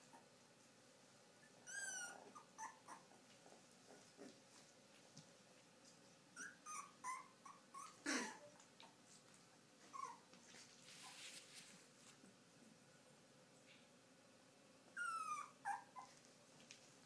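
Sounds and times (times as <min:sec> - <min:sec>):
puppies squeaking and whimpering: 0:01.4 - 0:03.2, 0:06.4 - 0:08.2, 0:09.8 - 0:10.3, 0:15.0 - 0:16.2.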